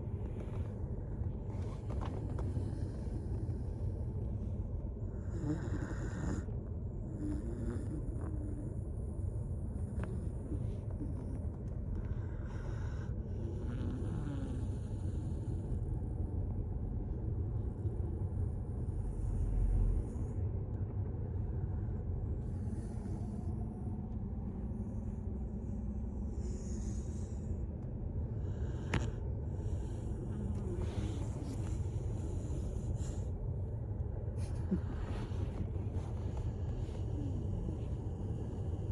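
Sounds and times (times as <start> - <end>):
dog snoring: 1.5 - 3.8, 5.0 - 16.2, 22.4 - 23.9, 26.1 - 27.6, 28.4 - 33.4, 34.3 - 38.9.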